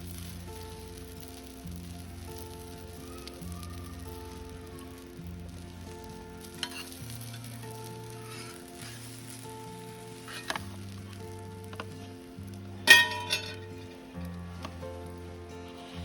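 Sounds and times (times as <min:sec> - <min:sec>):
food sizzling in a pan: 0:00.0 - 0:16.0
soft background music: 0:00.0 - 0:16.0
utensil clinking against pan: 0:12.9 - 0:13.7.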